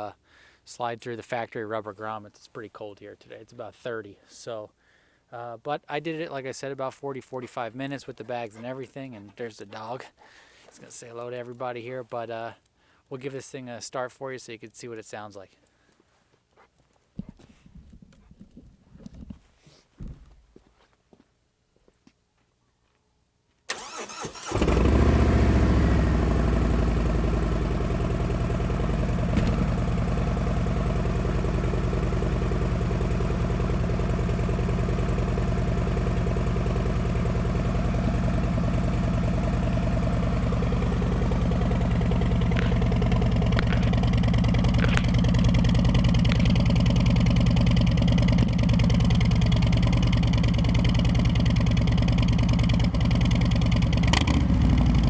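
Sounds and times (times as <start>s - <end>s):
motorcycle engine starting: 23.7s - 55.0s
motorcycle engine idling: 23.8s - 55.0s.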